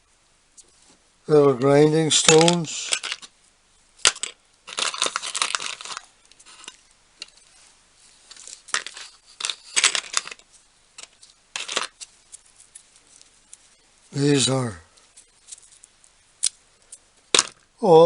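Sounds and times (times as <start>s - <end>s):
tool accessories rattling and clinking: 2.1s - 3.3s, 4.0s - 7.4s, 8.3s - 12.1s.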